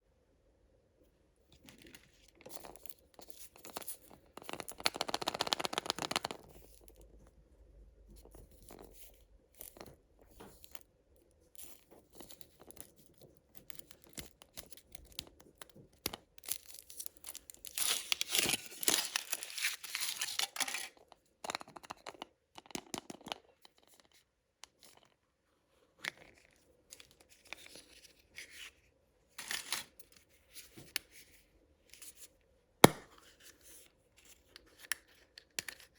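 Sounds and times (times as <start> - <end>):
candy wrappers crinkling: 16.4 - 21.1.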